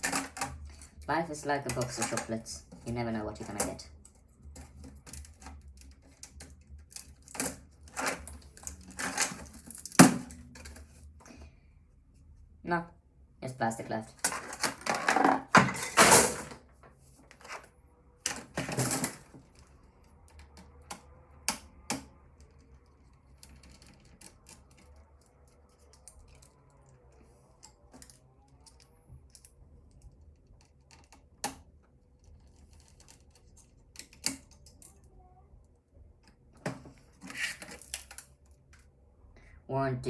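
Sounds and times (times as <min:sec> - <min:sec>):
computer parts being handled: 0:00.0 - 0:11.3, 0:14.1 - 0:35.0, 0:36.2 - 0:38.9
parts clattering: 0:00.0 - 0:11.4, 0:14.1 - 0:19.7.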